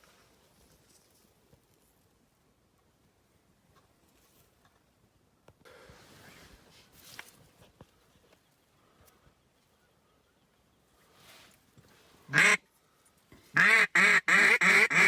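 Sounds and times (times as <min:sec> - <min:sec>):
duck call quacking: 0:12.3 - 0:12.6, 0:13.6 - 0:15.0.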